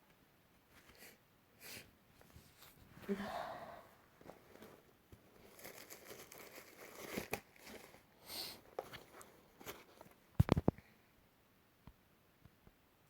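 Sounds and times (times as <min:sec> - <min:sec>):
crinkling and rustling handling: 0:02.1 - 0:03.3, 0:04.0 - 0:10.9.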